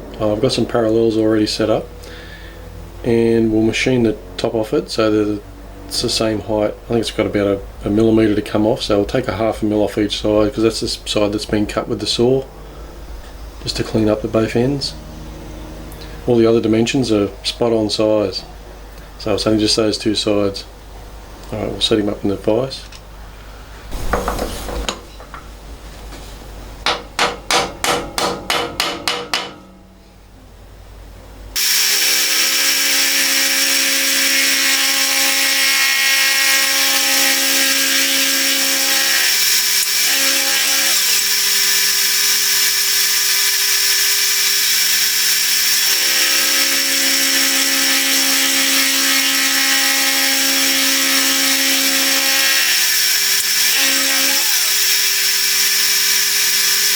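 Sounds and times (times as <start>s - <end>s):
hammer tapping on steel: 26.8s - 29.8s
milling machine cutting steel: 31.6s - 56.9s.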